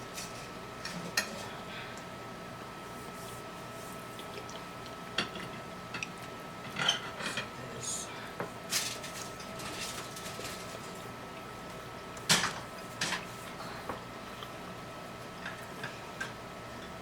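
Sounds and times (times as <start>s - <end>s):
dishes and cutlery clinking: 6.7s - 7.5s.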